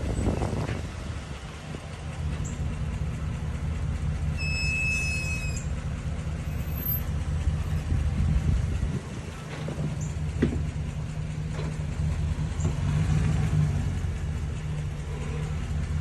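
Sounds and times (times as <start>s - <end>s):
brake squeal: 0.0s - 1.0s, 4.2s - 8.0s
truck engine hum: 0.0s - 16.0s.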